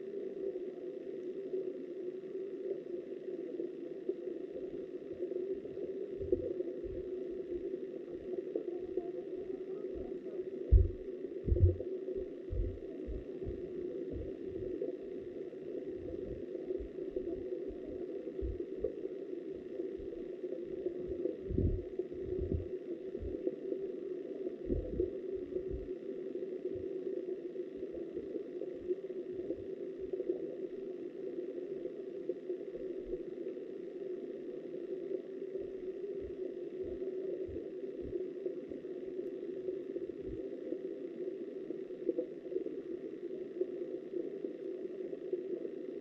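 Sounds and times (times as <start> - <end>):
muffled underwater river rush: 2.6 - 45.6
low thumps: 10.7 - 11.8, 12.5 - 14.7, 21.5 - 23.4.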